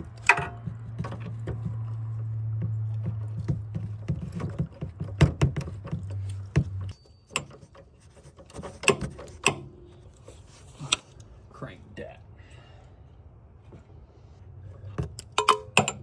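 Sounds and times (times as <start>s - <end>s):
metal parts clicking and knocking: 0.0s - 1.9s, 3.0s - 9.7s, 14.8s - 16.0s.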